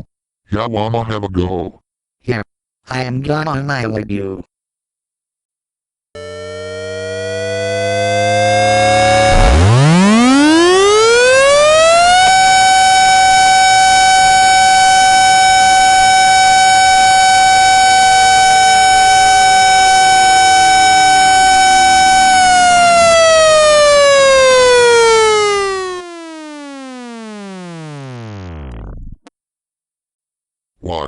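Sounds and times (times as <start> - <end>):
warning siren wailing: 6.2 - 28.7
lower siren tone: 6.2 - 28.8.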